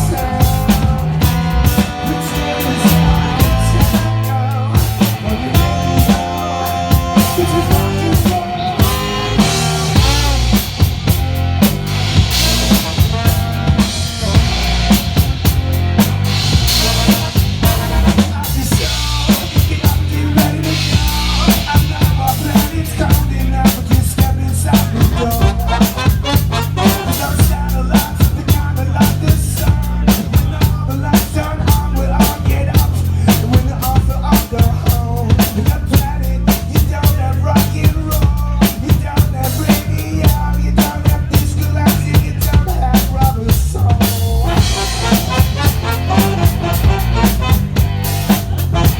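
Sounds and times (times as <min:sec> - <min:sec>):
bass line: 0:00.0 - 0:48.9
rock band playing live: 0:00.0 - 0:48.9
bass drum and snare hits: 0:07.0 - 0:30.8, 0:41.2 - 0:48.9.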